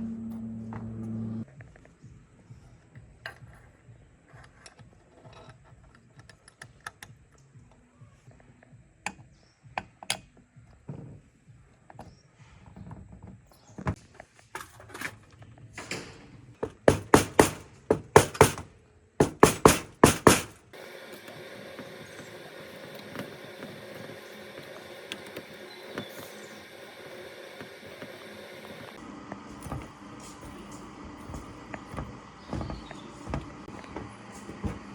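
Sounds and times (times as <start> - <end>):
steady mechanical hum: 0.0 - 4.5, 13.6 - 34.9
sharp knocks on metal: 16.6 - 20.6.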